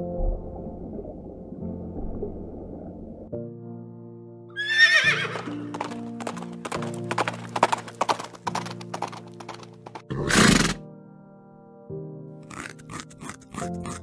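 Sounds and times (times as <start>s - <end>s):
background music: 0.0s - 14.0s
horse whinnying: 4.6s - 5.9s, 10.1s - 10.8s
hooves clip-clopping: 5.2s - 10.7s.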